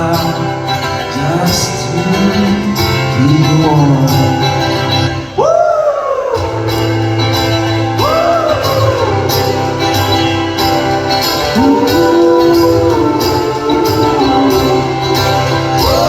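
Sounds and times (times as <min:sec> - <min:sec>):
live band playing: 0:00.0 - 0:16.0
bass line: 0:06.2 - 0:16.0
tambourine jingles: 0:06.5 - 0:16.0.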